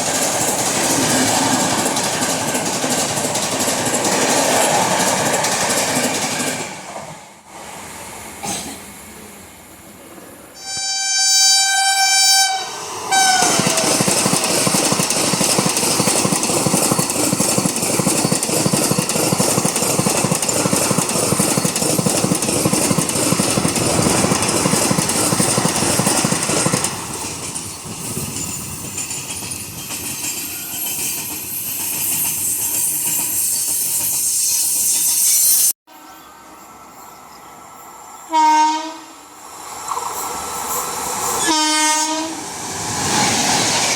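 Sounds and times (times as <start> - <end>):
train wheels clattering: 0.0 - 6.8, 13.3 - 34.3
locomotive horn: 10.6 - 13.9, 38.3 - 39.2, 41.4 - 42.4.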